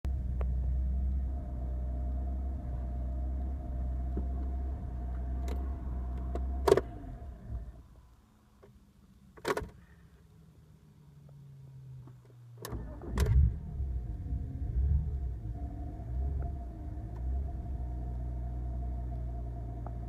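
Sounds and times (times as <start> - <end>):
engine stopping and running down: 12.8 - 20.0.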